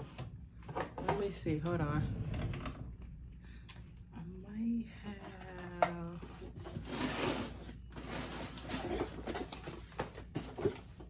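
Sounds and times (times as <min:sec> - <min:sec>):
rustling of packaging: 0:06.3 - 0:11.0.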